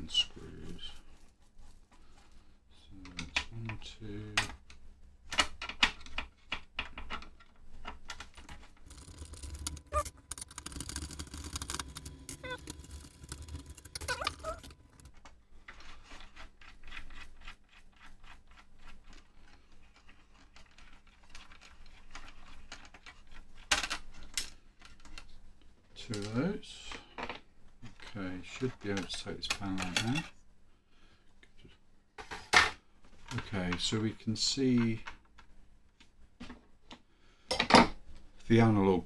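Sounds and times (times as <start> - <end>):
screwdriver clicking on screws: 8.8 - 15.1
short squeaks: 8.8 - 15.1.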